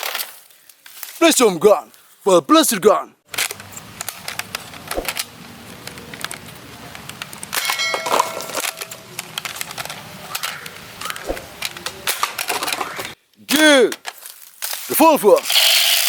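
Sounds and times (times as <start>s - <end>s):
hard objects clicking and knocking: 3.4s - 13.0s
metallic ringing ding: 7.6s - 9.0s.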